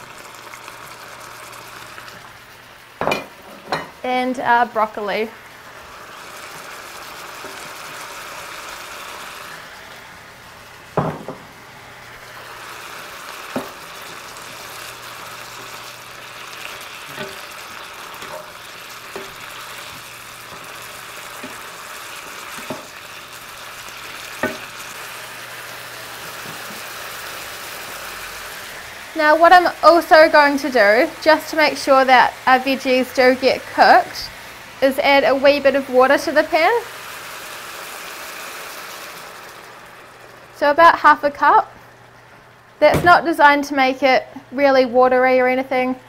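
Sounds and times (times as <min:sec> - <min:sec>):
food sizzling in a pan: 0:00.0 - 0:46.0.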